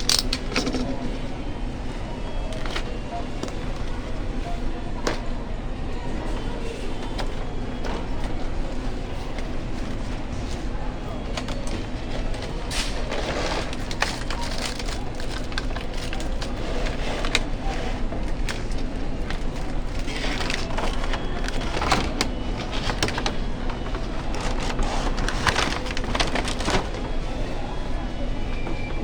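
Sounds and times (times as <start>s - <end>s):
plastic parts clicking: 0.0s - 1.2s
low background hum: 0.0s - 29.0s
packaging rustling and crinkling: 11.4s - 27.3s.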